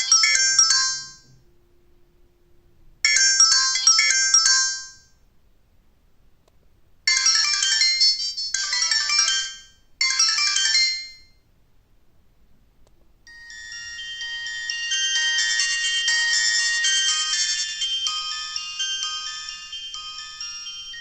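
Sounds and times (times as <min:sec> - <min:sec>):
mobile phone ringtones: 0:00.0 - 0:01.5, 0:03.0 - 0:05.1, 0:07.1 - 0:11.3, 0:13.3 - 0:21.0.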